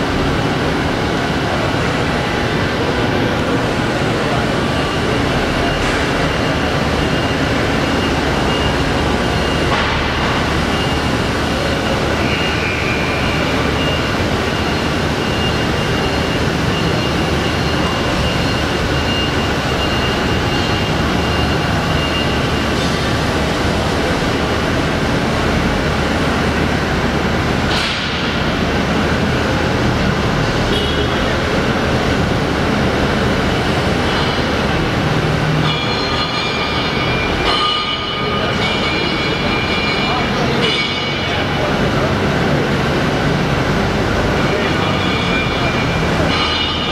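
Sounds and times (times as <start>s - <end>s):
faint high machine whine: 0.0s - 46.9s.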